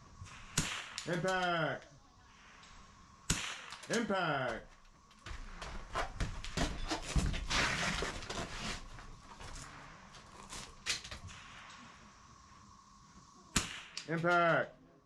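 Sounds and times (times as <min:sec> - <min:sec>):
rustling: 0:04.7 - 0:11.7.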